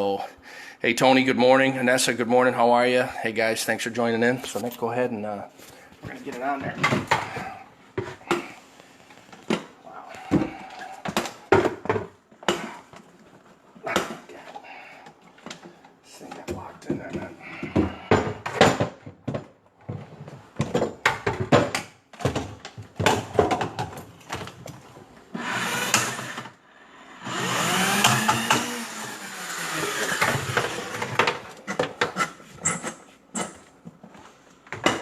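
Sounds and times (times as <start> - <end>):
drain rodder motor whirring: 25.3 - 26.6, 27.2 - 31.9.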